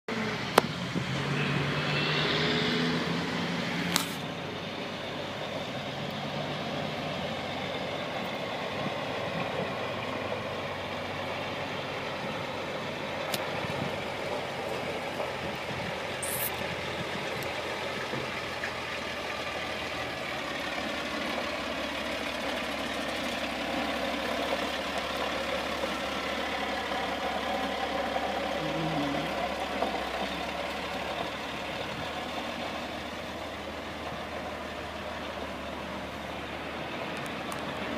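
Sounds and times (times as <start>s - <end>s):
truck engine idling: 0.1s - 37.9s.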